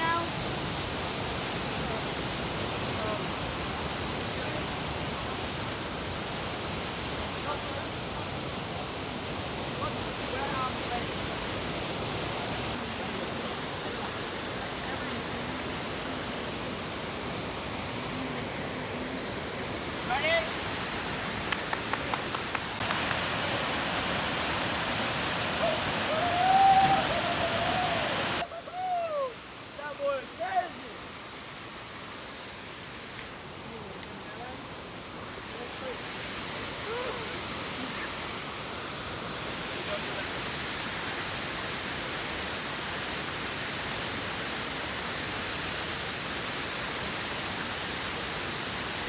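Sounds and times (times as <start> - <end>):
waterfall rushing: 0.0 - 49.0
long wavering pitched call: 25.6 - 29.4.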